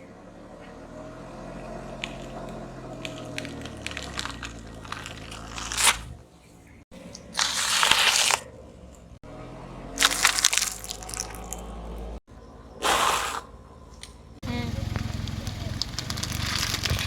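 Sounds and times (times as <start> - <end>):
car engine humming: 0.0 - 17.0
tyre crushing objects: 1.9 - 6.2, 7.1 - 8.5, 10.0 - 11.6.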